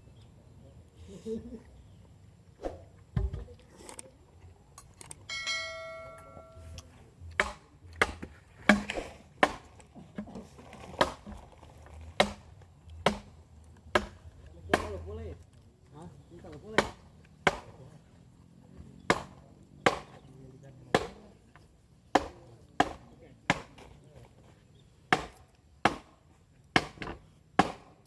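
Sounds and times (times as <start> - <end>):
metal object struck ringing: 5.3 - 6.8
sharp chopping knocks: 7.4 - 9.7, 12.2 - 13.3, 13.9 - 15.0, 16.8 - 17.8, 19.1 - 20.2, 20.9 - 21.2, 22.1 - 23.8, 25.1 - 26.1, 26.8 - 28.0.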